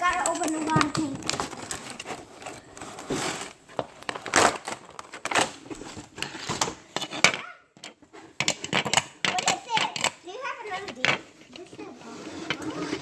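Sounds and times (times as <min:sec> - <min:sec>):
plastic packaging crinkling: 0:00.0 - 0:06.9
plastic toy parts rattling: 0:00.0 - 0:13.0.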